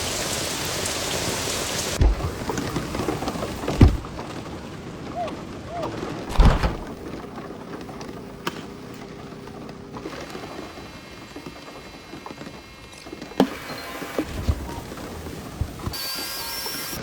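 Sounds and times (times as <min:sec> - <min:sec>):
rain pattering: 0:00.0 - 0:13.4
heavy low thump: 0:06.3 - 0:07.0.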